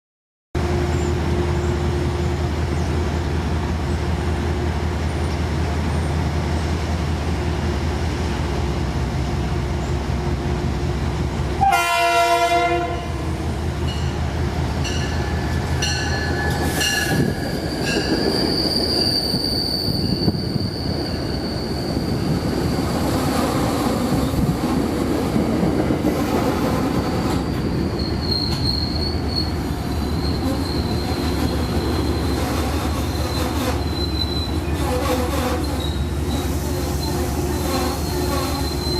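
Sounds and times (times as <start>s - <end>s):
train engine rumble: 0.6s - 38.9s
train horn blast: 11.6s - 13.3s, 34.6s - 38.9s
wheel and brake squeals: 15.1s - 24.5s, 26.2s - 38.9s.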